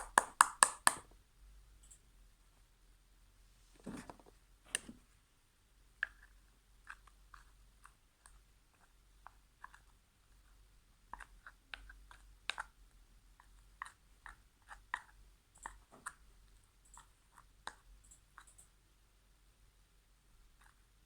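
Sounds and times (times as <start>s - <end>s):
slime stirred with wet clicks: 0.0s - 1.0s, 6.0s - 18.8s.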